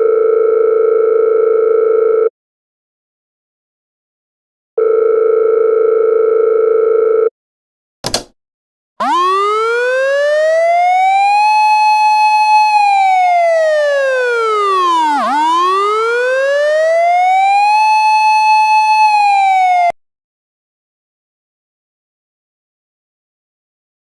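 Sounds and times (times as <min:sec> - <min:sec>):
wailing siren: 0:09.0 - 0:20.0.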